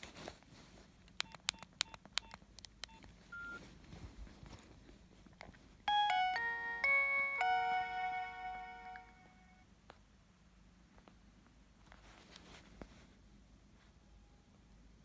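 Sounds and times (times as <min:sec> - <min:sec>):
keypad clicks with beeps: 0:01.2 - 0:03.6
synthesized phone ringtone: 0:05.9 - 0:09.6.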